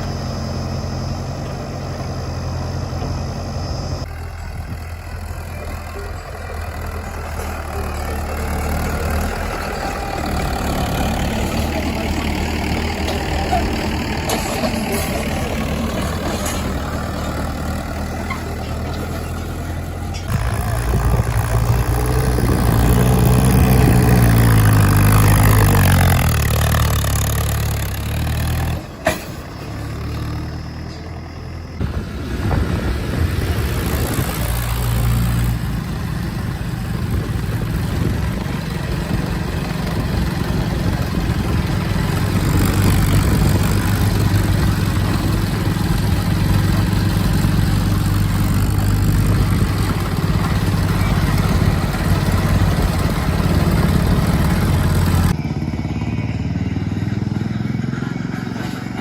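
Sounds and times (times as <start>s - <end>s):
diesel engine running: 0.0s - 59.0s.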